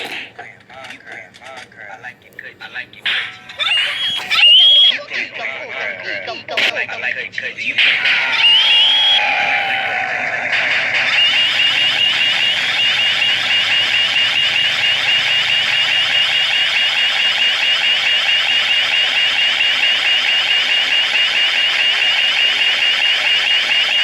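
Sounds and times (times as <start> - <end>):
high-pitched warbling electronic alarm: 3.1 - 5.0, 7.8 - 10.0, 10.9 - 24.0.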